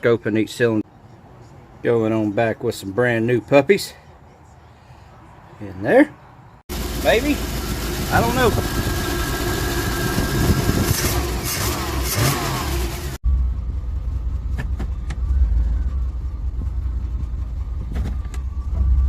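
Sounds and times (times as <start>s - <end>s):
pickup engine idling: 6.7s - 12.0s.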